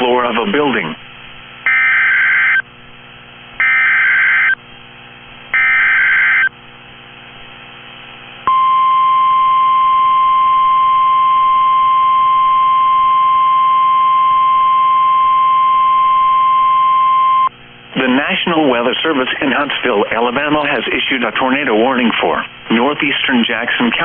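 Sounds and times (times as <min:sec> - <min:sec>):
steady warning alarm tone: 0:01.6 - 0:02.7, 0:03.6 - 0:04.6, 0:05.5 - 0:06.5, 0:08.5 - 0:17.5
harsh digital data bursts: 0:01.7 - 0:02.6, 0:03.6 - 0:04.6, 0:05.6 - 0:06.5.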